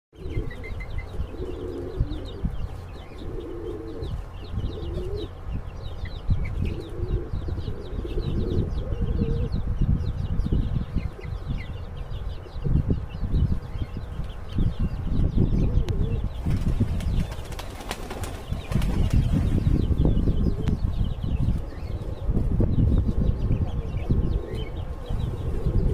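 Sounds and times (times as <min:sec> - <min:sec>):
pigeons cooing: 0:00.2 - 0:09.6, 0:14.8 - 0:25.9
small birds chirping: 0:00.2 - 0:25.9
wings flapping: 0:16.4 - 0:19.7.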